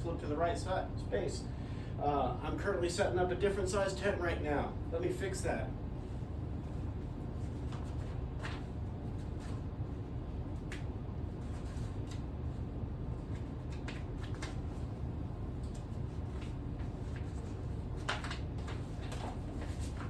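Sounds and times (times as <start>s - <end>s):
low room hum: 0.0s - 20.0s
paper pages turning: 7.4s - 9.6s, 13.2s - 14.9s, 15.6s - 20.0s.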